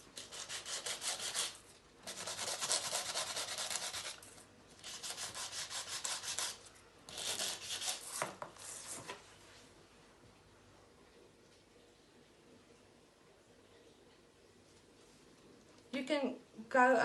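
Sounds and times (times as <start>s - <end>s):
sanding block rubbing paper: 0.3s - 4.2s, 4.8s - 8.1s.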